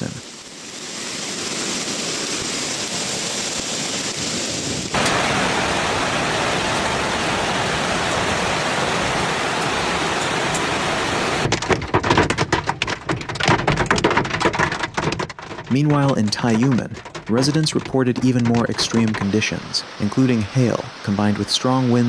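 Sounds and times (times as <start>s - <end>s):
heavy rain downpour: 0.0s - 22.0s
clatter of hard hits: 11.4s - 19.4s.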